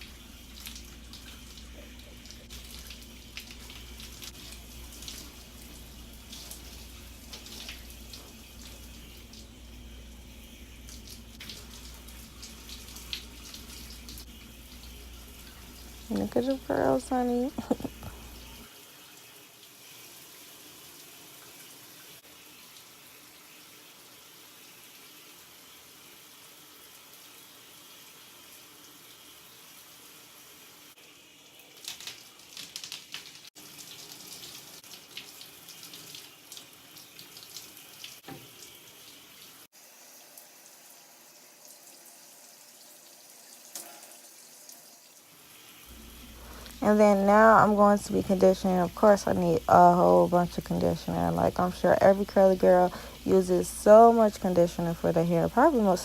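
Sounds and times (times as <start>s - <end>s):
water splashing on hair: 0.0s - 9.4s, 31.7s - 38.6s
water running from tap: 0.0s - 56.0s.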